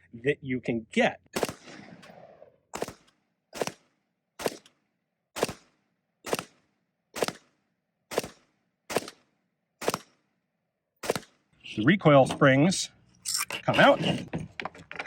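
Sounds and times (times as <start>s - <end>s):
rifle shots with echo: 1.4s - 10.3s, 11.0s - 11.4s.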